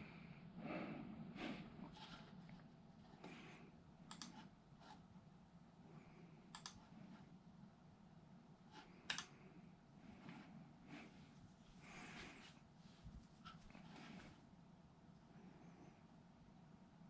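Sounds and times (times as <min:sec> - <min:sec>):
low steady hum: 0:00.0 - 0:17.0
computer keys clicking: 0:04.1 - 0:04.4, 0:06.5 - 0:06.8, 0:09.1 - 0:09.3.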